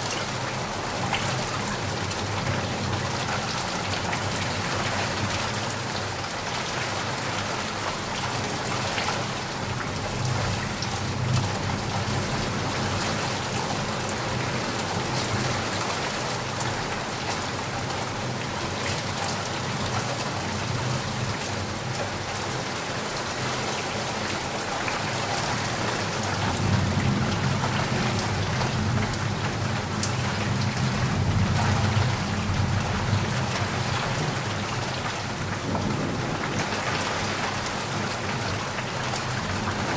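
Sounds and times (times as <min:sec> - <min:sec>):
rain pattering: 0:00.0 - 0:39.9.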